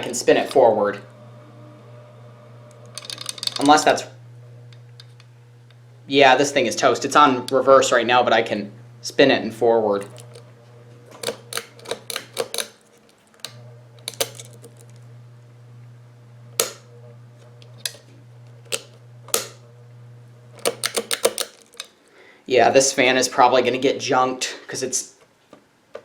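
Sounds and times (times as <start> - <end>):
ceiling fan motor humming: 0.0 - 24.0
sharp clicks and knocks: 2.7 - 3.9, 10.0 - 10.5, 11.1 - 15.0, 16.6 - 16.9, 17.6 - 19.6, 20.6 - 22.0.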